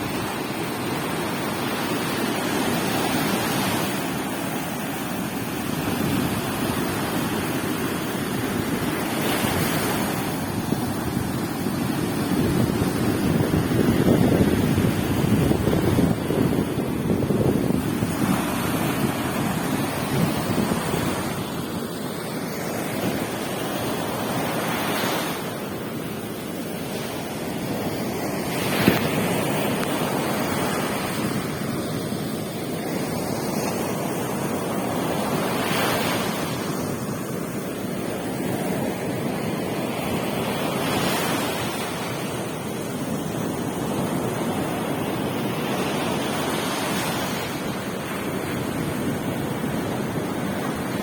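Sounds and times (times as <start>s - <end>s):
wind buffeting microphone: 0.0s - 26.0s
waves breaking on a beach: 0.0s - 51.0s.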